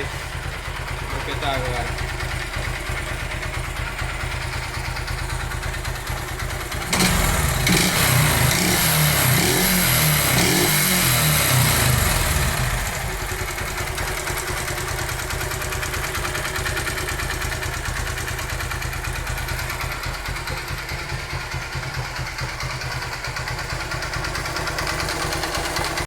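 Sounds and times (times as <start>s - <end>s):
motorcycle engine idling: 0.0s - 26.0s.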